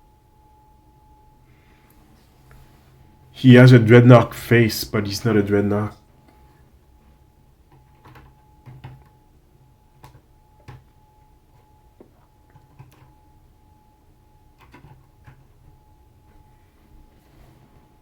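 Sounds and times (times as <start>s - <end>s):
faint high hum: 0.0s - 18.0s.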